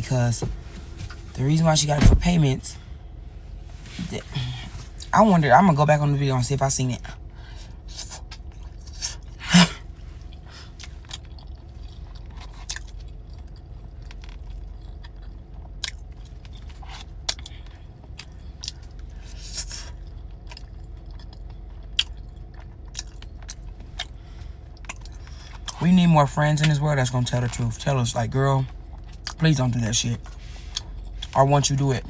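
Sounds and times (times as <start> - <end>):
low steady hum: 0.0 - 32.0
close-up chewing and eating: 7.0 - 26.8, 28.6 - 29.5.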